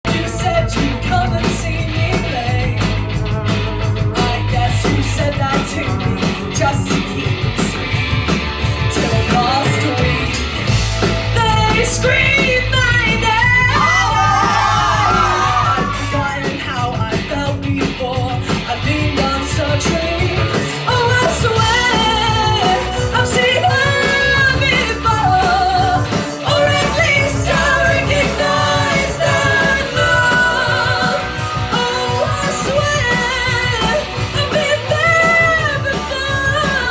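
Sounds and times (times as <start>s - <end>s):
pop-punk rock band playing: 0.0s - 36.9s
person singing: 11.4s - 36.9s.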